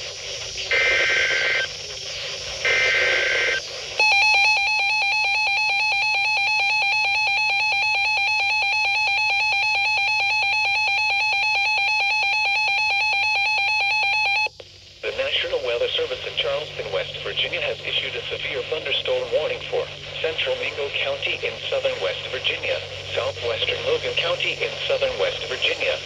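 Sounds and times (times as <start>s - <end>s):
warbling digital data tones: 0.5s - 14.6s
loud steady alarm tone: 0.7s - 1.7s, 2.6s - 14.5s.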